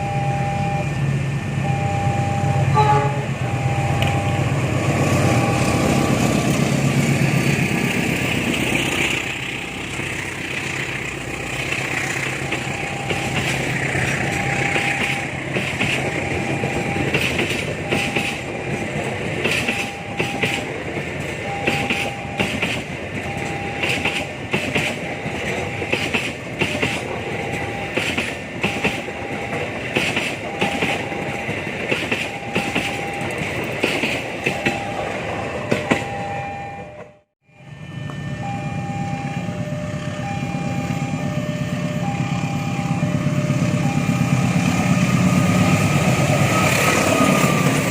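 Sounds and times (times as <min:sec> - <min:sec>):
level-crossing alarm tone: 0:00.0 - 0:06.7, 0:11.2 - 0:47.9
locomotive engine: 0:00.0 - 0:47.9
train wheels clicking over rail joints: 0:04.8 - 0:36.1.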